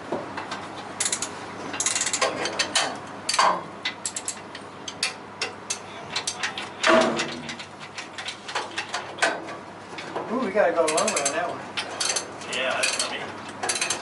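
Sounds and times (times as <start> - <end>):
metal tools clicking and clinking: 10.9 - 14.0.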